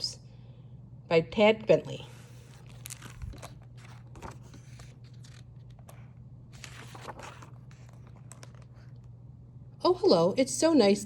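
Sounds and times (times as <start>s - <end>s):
low steady hum: 0.0s - 11.0s
book pages rustling: 2.1s - 9.2s.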